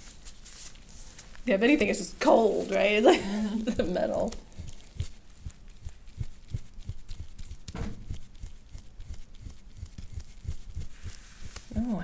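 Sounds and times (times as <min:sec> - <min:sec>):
metal tool scraping oiled skin: 0:03.8 - 0:12.0.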